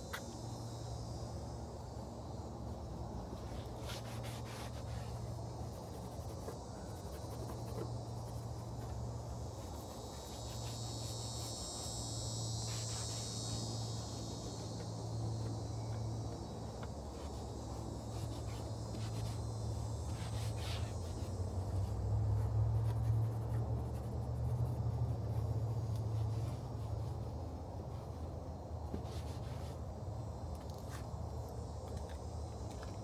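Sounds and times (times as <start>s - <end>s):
insects chirring: 0.0s - 33.0s.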